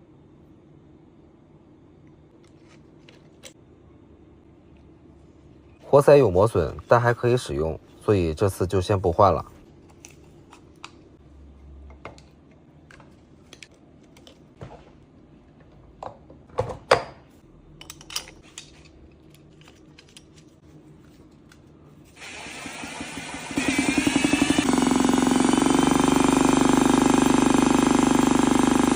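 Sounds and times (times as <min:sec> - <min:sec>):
tools and engine parts clicking: 0:17.8 - 0:20.6.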